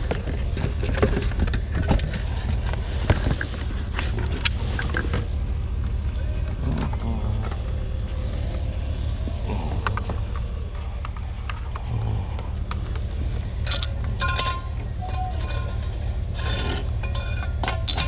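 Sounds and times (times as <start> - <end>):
vehicle running low rumble: 0.0 - 18.0
metallic clinks and rattles: 12.6 - 18.0.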